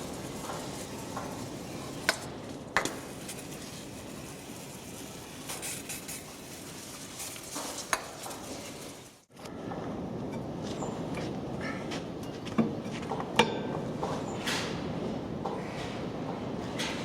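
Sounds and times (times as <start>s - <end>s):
background hiss: 0.0s - 9.3s.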